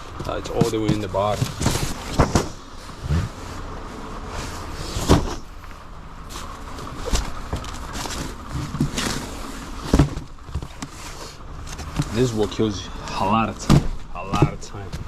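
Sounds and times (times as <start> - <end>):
steady background noise: 0.0 - 15.0
boxes knocking on a pallet: 0.1 - 2.6, 9.9 - 10.3, 13.6 - 15.0.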